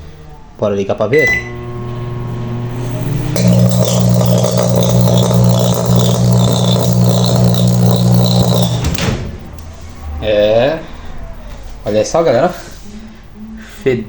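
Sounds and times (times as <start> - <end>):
microwave oven mains hum: 0.0 - 12.4
microwave clicks: 1.2 - 9.4
crackling buzz of arcing: 1.3 - 9.6.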